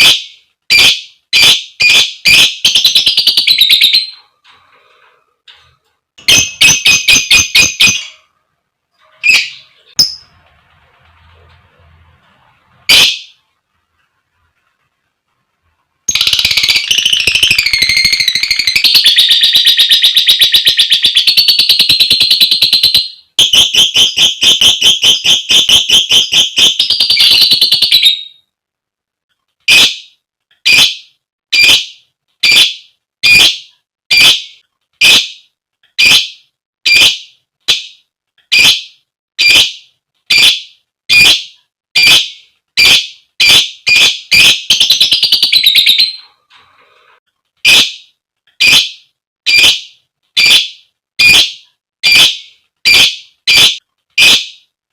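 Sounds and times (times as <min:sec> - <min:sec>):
shrill bird calls: 0:00.0 - 0:04.2, 0:06.2 - 0:08.2, 0:16.1 - 0:28.5, 0:29.7 - 0:46.4, 0:47.7 - 0:54.6.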